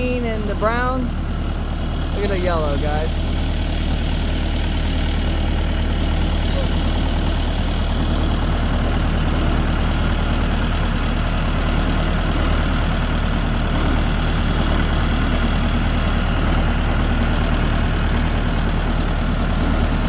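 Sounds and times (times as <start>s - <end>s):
vehicle engine at low revs: 0.0s - 20.0s.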